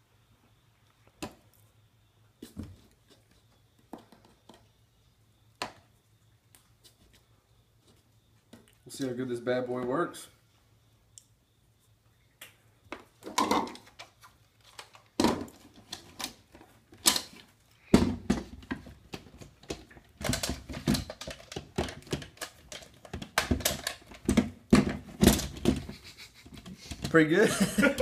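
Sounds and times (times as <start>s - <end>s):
plastic parts clicking and knocking: 12.9s - 27.2s.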